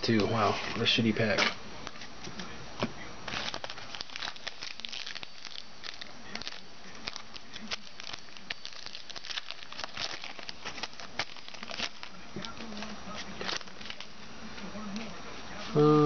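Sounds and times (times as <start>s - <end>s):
cards being handled: 2.8s - 14.1s
foil wrapper crinkling: 3.2s - 14.3s.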